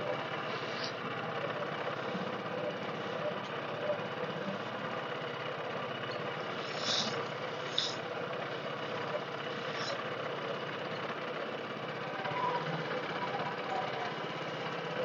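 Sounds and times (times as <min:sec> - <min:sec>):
boat motor droning: 0:00.0 - 0:15.0
brief hisses: 0:06.6 - 0:08.0.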